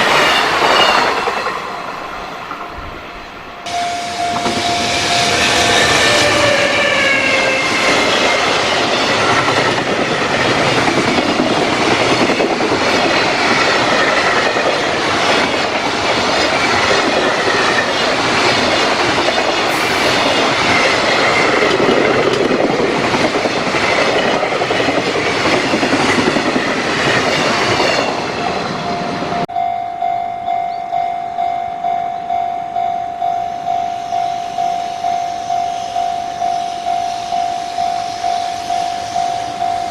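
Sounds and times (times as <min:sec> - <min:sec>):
train wagons clattering on rails: 0:00.0 - 0:29.5
level crossing bell ringing: 0:03.7 - 0:05.7, 0:28.9 - 0:39.9.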